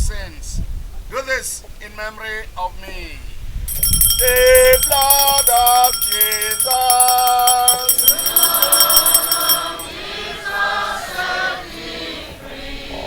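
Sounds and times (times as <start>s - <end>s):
altar bells ringing: 3.7s - 10.3s
choir singing softly: 7.7s - 13.0s.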